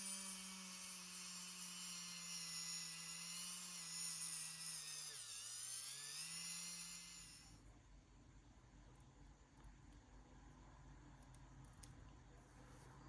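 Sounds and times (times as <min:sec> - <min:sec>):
power tool motor whining: 0:00.0 - 0:07.6.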